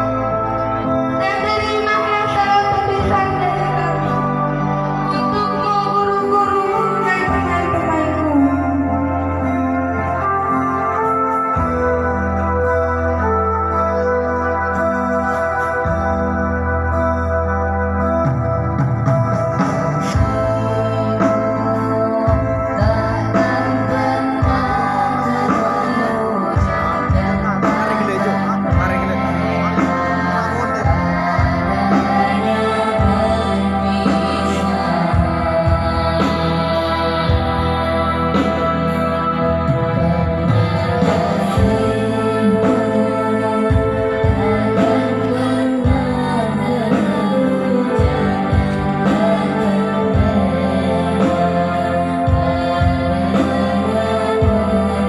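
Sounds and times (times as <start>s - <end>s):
music with bass line: 0.0s - 55.0s
song with sung melody: 0.0s - 55.0s
person singing: 20.0s - 55.0s.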